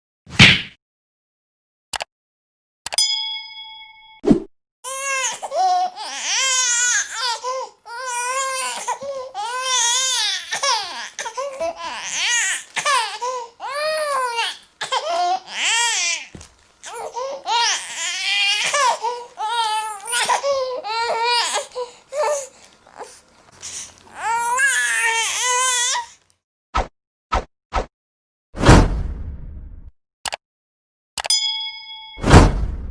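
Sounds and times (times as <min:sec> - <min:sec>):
baby crying: 0:04.9 - 0:26.2.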